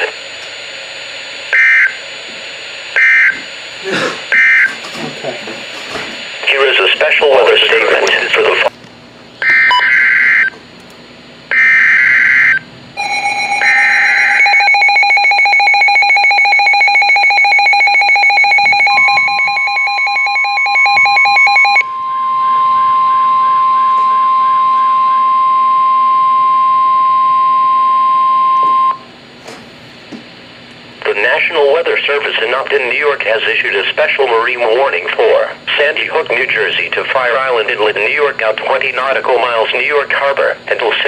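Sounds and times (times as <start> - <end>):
steady single-pitched alarm tone: 1.5 - 2.1, 2.7 - 3.7, 4.3 - 4.8, 9.4 - 10.6, 11.5 - 29.1
rapidly pulsing beep alarm: 1.6 - 2.0, 3.0 - 3.4, 4.3 - 4.8, 9.4 - 10.5, 11.5 - 29.0.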